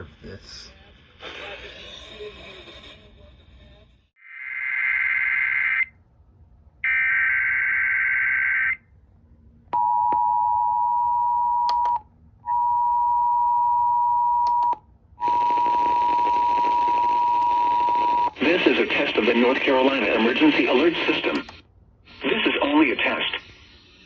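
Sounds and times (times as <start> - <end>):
sharp clicks: 21.3 - 21.6.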